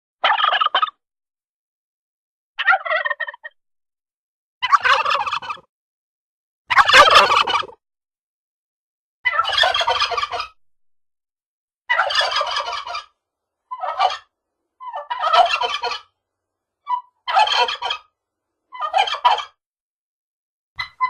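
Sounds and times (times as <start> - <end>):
turkey gobbling: 0.2 - 1.0, 2.6 - 3.6, 4.6 - 5.7, 6.7 - 7.8, 9.3 - 10.6, 11.9 - 16.1, 16.9 - 18.1, 18.7 - 19.6.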